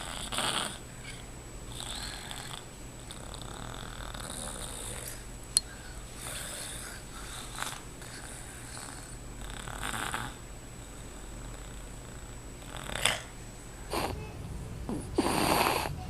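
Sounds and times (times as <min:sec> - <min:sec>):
baby snoring softly: 0:00.0 - 0:05.2, 0:06.2 - 0:10.4, 0:14.9 - 0:16.0.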